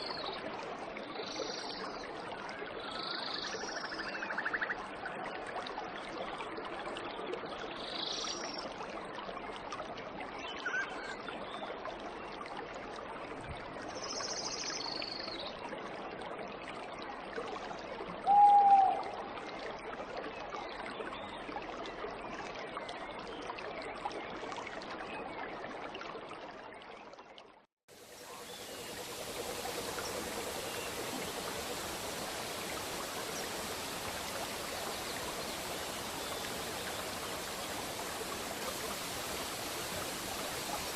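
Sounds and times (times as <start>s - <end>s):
waterfall rushing: 28.0s - 40.9s.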